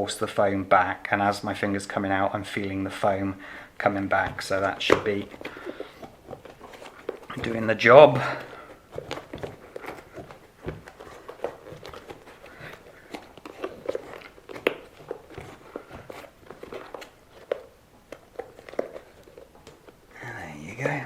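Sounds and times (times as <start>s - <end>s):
rubs squeaks and clicks of handling: 3.8s - 21.0s
fingers squeezing rubber tyre: 8.2s - 19.9s.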